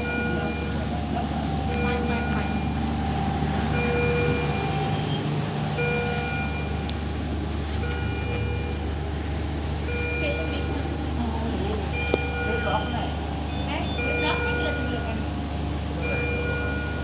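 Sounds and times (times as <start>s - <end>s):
low machine hum: 0.0s - 17.0s
medical alarm beeping: 0.0s - 17.0s.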